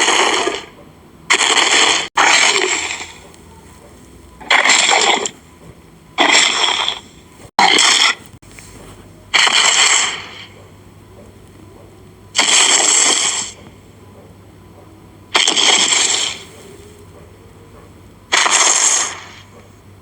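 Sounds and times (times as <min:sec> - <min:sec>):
harsh crunching dinosaur noise: 0:00.0 - 0:00.7, 0:01.3 - 0:03.4, 0:04.4 - 0:05.4, 0:06.2 - 0:08.4, 0:09.3 - 0:10.6, 0:12.4 - 0:13.6, 0:15.4 - 0:16.6.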